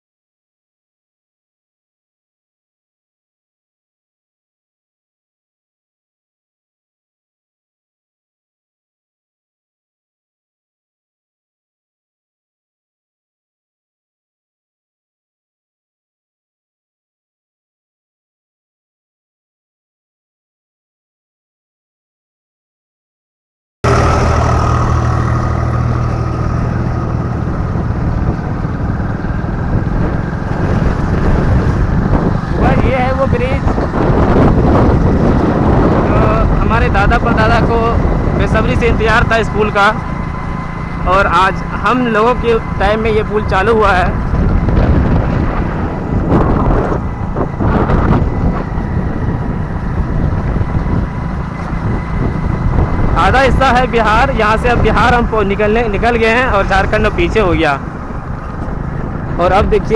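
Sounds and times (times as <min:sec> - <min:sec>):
road and wind noise: 0:23.8 - 0:59.9
vehicle engine running: 0:23.8 - 0:59.9.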